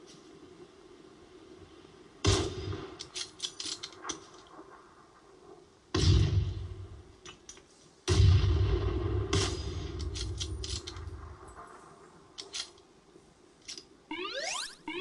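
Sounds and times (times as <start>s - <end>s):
heavy booms: 8.1s - 10.0s.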